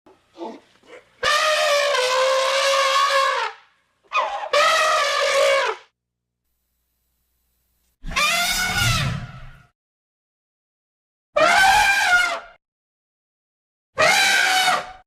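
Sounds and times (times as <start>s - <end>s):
elephant trumpeting: 0.9s - 5.9s, 8.0s - 9.6s, 11.4s - 12.4s, 14.0s - 15.0s.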